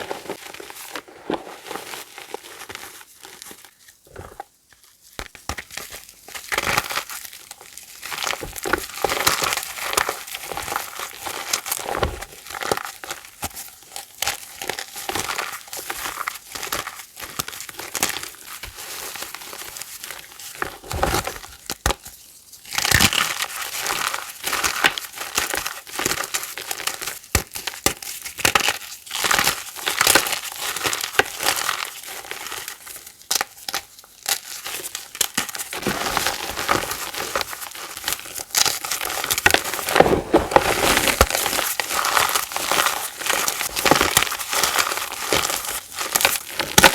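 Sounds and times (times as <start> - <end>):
chalk crunching and crumbling: 0.0 - 4.4, 35.6 - 46.9.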